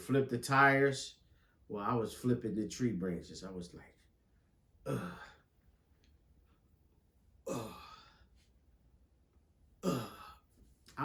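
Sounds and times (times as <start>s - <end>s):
man sighing heavily: 4.8s - 5.4s, 7.4s - 8.3s, 9.8s - 10.5s.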